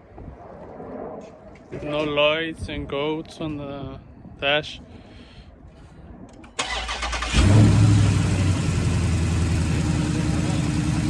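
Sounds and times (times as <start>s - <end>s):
car engine revving and idling: 7.2s - 11.0s.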